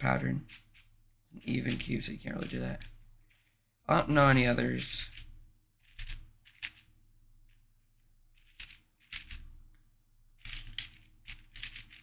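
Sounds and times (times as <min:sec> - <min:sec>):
puzzle cube turning clicks: 0:08.4 - 0:09.5, 0:10.4 - 0:12.0.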